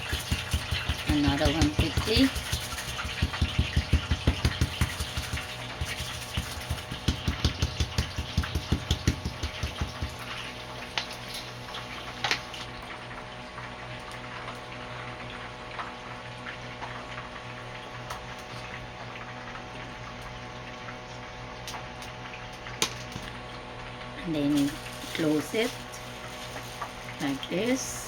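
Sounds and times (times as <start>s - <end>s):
wet hands patting dough: 0.0s - 10.4s.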